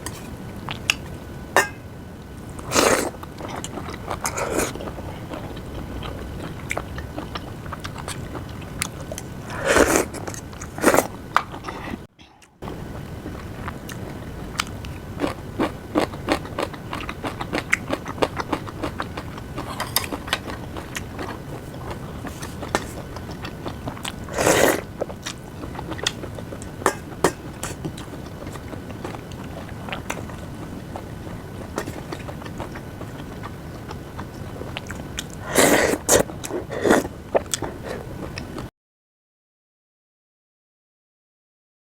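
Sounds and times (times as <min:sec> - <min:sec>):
person chewing and biting food: 0:13.6 - 0:38.6.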